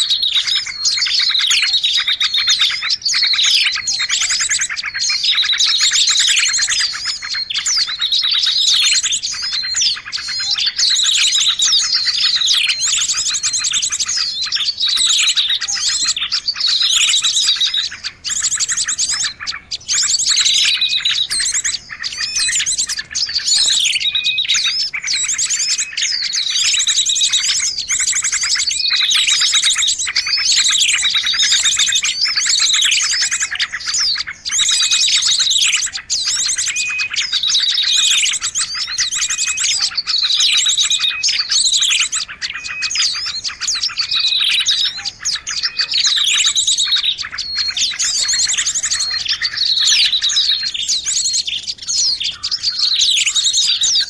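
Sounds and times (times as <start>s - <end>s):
songbirds chirping and trilling: 0.0s - 54.0s.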